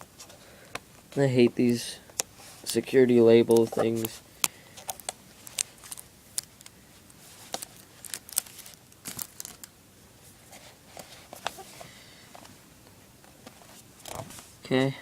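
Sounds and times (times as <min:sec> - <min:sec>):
plastic crinkling: 0:02.2 - 0:09.8
sticker tearing crackles: 0:04.8 - 0:09.7.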